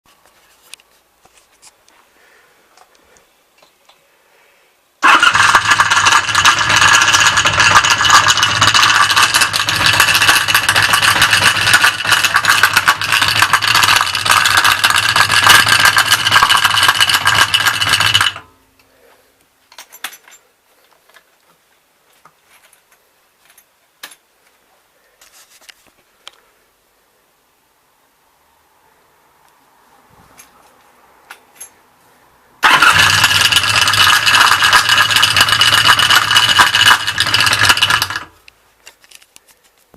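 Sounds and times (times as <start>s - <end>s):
motorcycle engine rattling: 5.0s - 18.5s, 32.6s - 38.3s.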